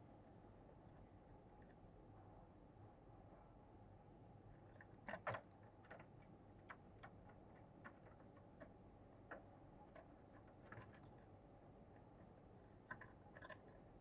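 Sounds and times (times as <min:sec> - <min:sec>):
faint irregular clicks: 0:04.6 - 0:14.0.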